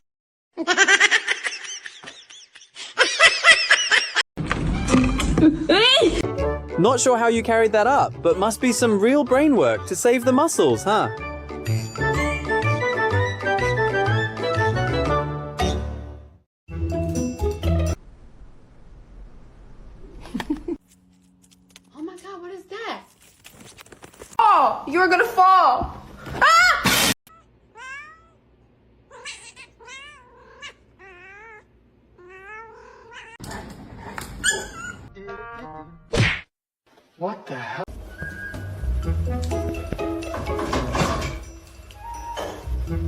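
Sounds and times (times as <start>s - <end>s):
cat yowling: 27.3s - 28.4s, 29.1s - 33.4s.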